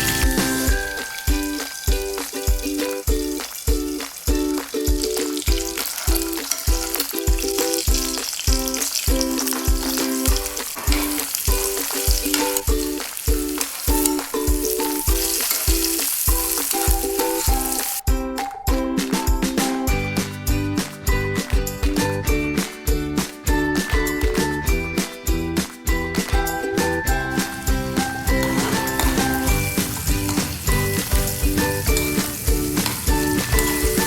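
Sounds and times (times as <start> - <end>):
chicken sizzling in a pan: 0.0 - 18.0, 27.0 - 34.0
background music with steady beat: 0.0 - 34.0.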